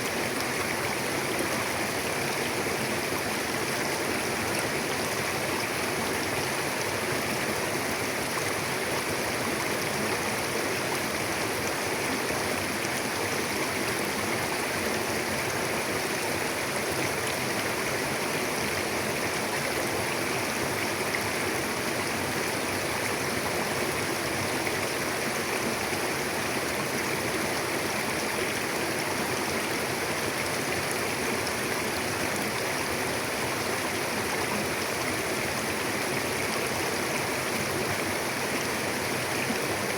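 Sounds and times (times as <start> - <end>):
river flowing over rocks: 0.0 - 39.9.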